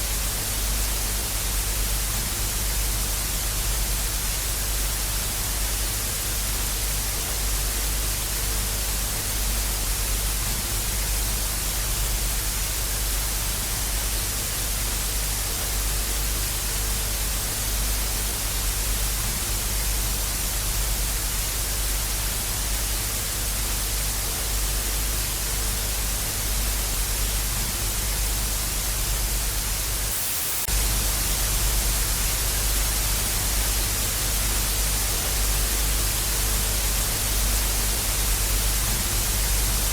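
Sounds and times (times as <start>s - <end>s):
tv static hiss: 0.0s - 39.9s.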